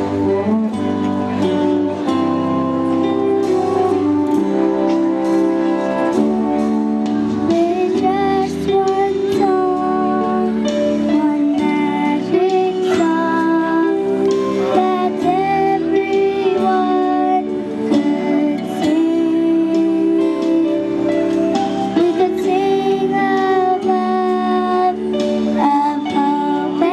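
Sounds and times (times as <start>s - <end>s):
guitar: 0.0s - 26.9s
children's choir singing: 7.2s - 20.8s.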